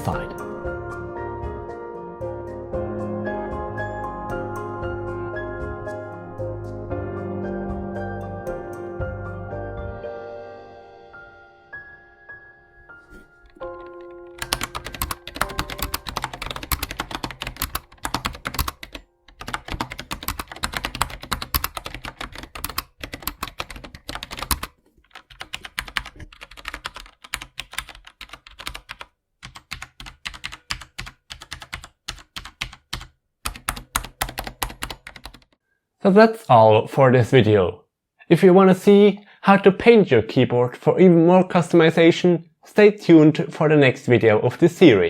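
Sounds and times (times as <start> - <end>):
typing on mechanical keyboard: 13.7 - 35.6.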